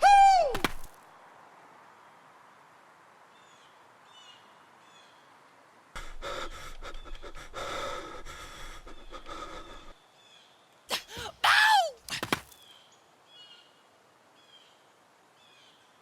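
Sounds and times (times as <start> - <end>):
person's breathy vocal sounds: 6.0 - 10.0, 10.9 - 12.4.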